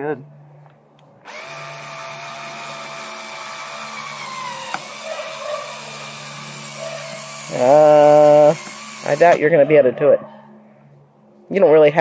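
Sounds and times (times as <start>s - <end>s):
power drill driving a screw: 1.3s - 9.4s.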